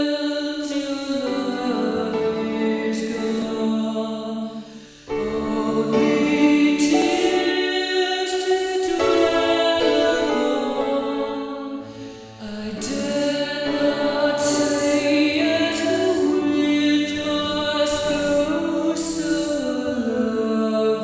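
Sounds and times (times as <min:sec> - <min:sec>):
choir singing sustained chords: 0:00.0 - 0:21.0.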